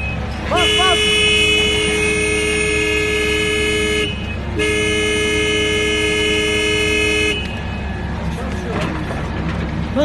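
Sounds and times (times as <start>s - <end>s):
two-note vehicle horn blasts: 0.5s - 7.6s.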